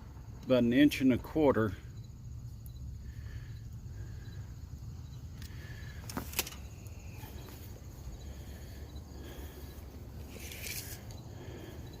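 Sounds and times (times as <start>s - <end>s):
crickets chirping: 0.0s - 12.0s
low steady rumble: 0.0s - 12.0s.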